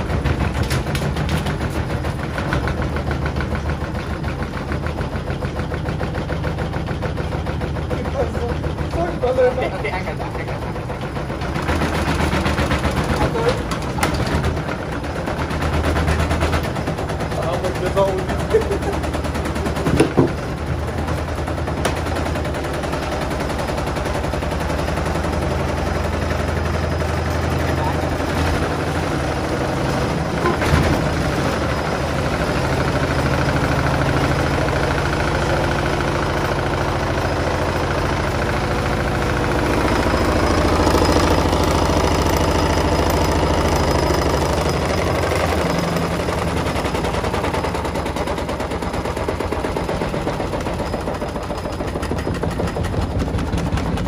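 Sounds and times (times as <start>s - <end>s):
washer drum spinning with clatter: 0.0s - 54.0s
knocks: 19.8s - 20.6s.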